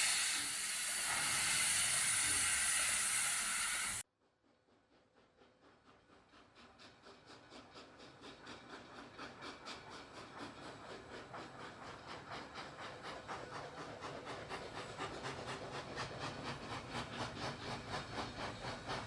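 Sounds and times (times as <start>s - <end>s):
steam hissing: 0.0s - 4.0s, 9.4s - 19.0s
steam locomotive chuffing: 0.0s - 4.0s, 4.7s - 19.0s.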